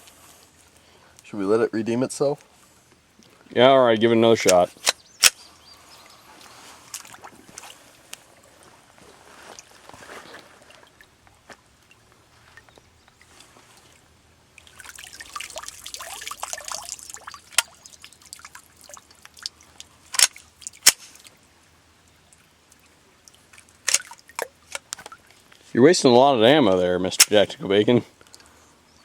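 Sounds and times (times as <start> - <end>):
water trickling and pouring: 6.0 - 25.6.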